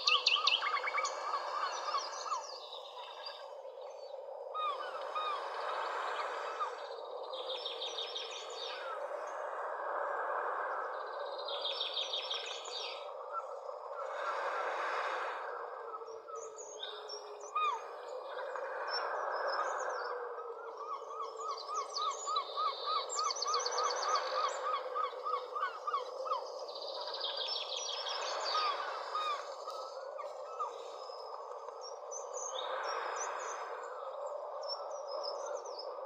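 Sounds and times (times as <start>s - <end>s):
birds singing: 0.0s - 9.4s, 10.9s - 13.7s, 20.7s - 35.9s.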